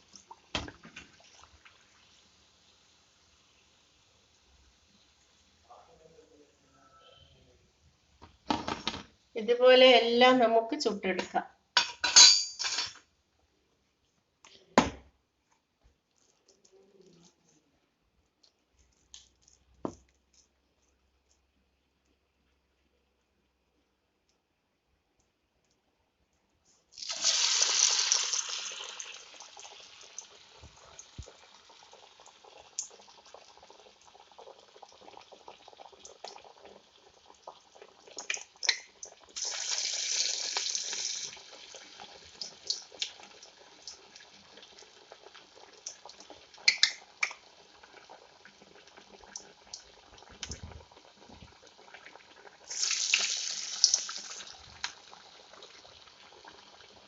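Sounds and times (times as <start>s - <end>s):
oil crackling and popping: 0.0s - 2.4s, 18.4s - 20.6s, 26.9s - 57.0s
fritters sizzling in hot oil: 26.8s - 34.6s, 35.2s - 47.5s, 52.6s - 57.0s.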